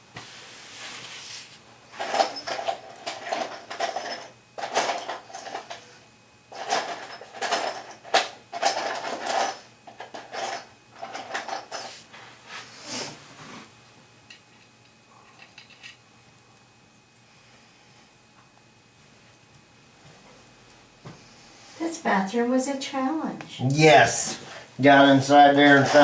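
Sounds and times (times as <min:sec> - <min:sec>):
tools clattering and scraping: 0:01.9 - 0:12.3, 0:14.3 - 0:16.0, 0:25.4 - 0:26.0.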